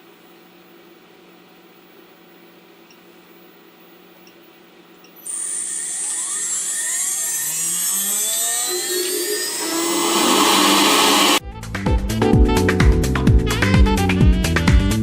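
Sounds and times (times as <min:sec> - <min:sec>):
router spindle whine: 0:05.2 - 0:11.4.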